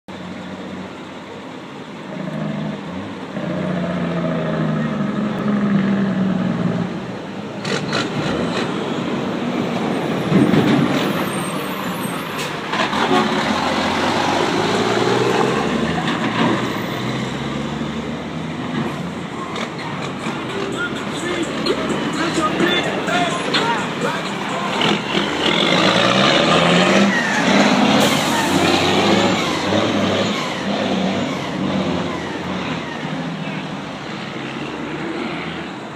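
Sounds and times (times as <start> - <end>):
truck engine pulling away: 0.1 - 35.9.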